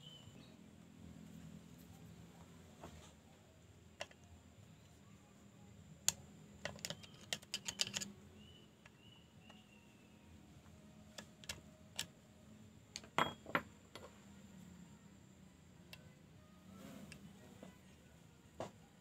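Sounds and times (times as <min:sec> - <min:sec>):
clicks of tools and metal parts: 0:06.0 - 0:08.1, 0:11.1 - 0:12.2.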